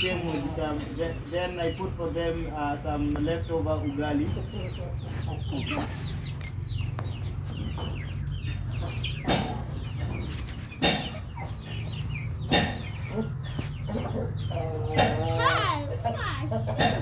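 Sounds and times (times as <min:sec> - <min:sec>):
chickens clucking and cheeping: 0:00.0 - 0:17.0
sharp knocks: 0:09.2 - 0:09.7, 0:12.5 - 0:13.0.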